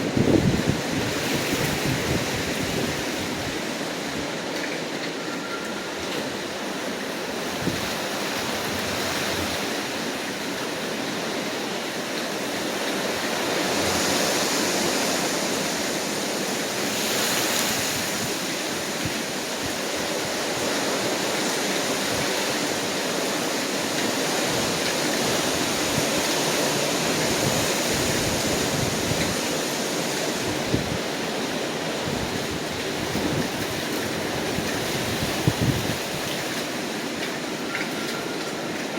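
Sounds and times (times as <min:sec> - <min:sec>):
wind gusting: 0:00.0 - 0:10.0, 0:24.4 - 0:38.9.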